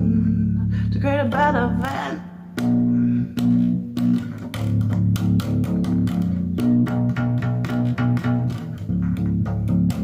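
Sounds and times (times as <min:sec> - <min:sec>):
bass guitar riff: 0:00.0 - 0:10.0.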